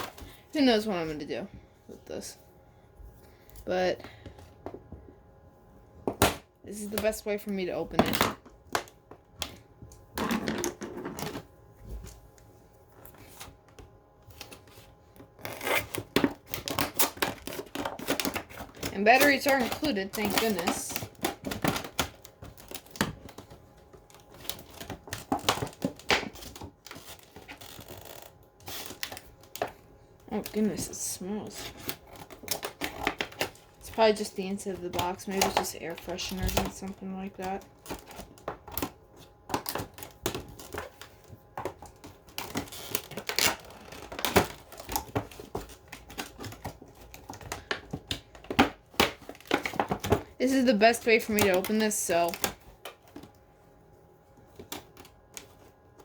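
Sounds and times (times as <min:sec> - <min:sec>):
cardboard clicks and crinkling: 0:31.5 - 0:53.4.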